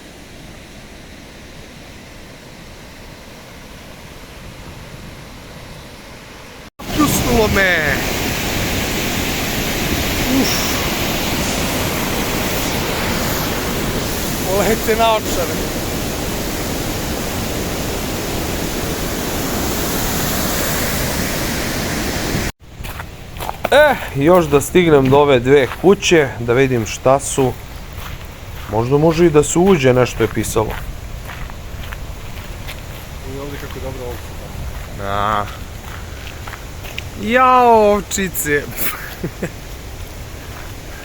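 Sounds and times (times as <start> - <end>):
waterfall rushing: 6.8 - 22.5, 32.3 - 41.0.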